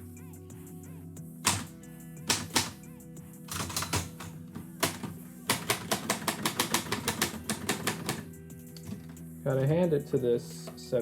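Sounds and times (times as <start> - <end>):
background music: 0.0 - 11.0
typewriter key strike: 1.5 - 2.8, 3.5 - 9.1.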